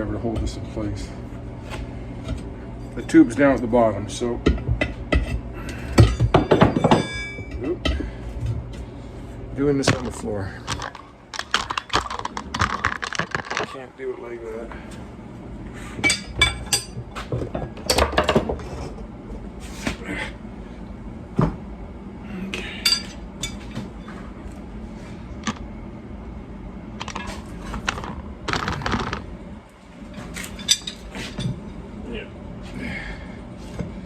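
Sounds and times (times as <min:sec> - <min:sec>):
metal tools clinking on wheel rim: 0:30.4 - 0:31.5.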